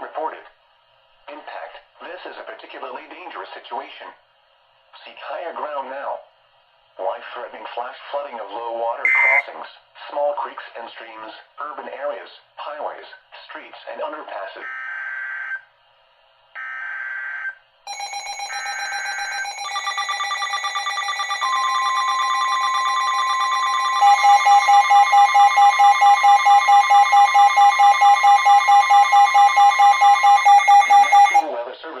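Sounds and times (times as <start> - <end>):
loud rapid beeping: 9.1 - 9.5, 17.9 - 31.4
steady warning tone: 9.1 - 9.5, 17.9 - 31.5.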